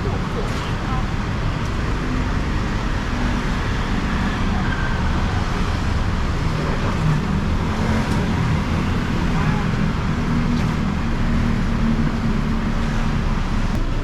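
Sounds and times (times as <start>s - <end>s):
street noise low rumble: 0.0s - 14.0s.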